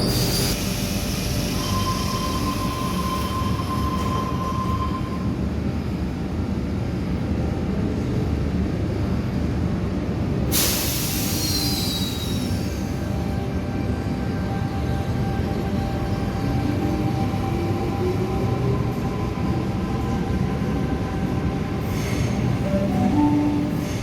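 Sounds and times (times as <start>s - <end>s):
train wheel squeal: 0.0s - 5.4s, 10.6s - 13.0s
electric train rumbling: 0.0s - 24.0s.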